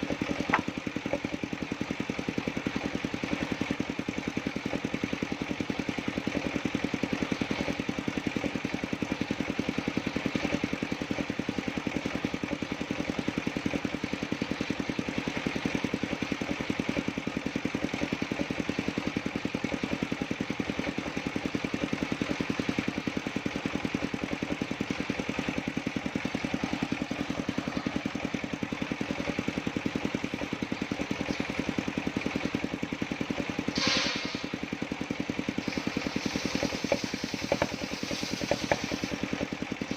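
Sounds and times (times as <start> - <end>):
circular sawmill engine running: 0.0 - 39.9
brief sharp noise: 33.8 - 34.6.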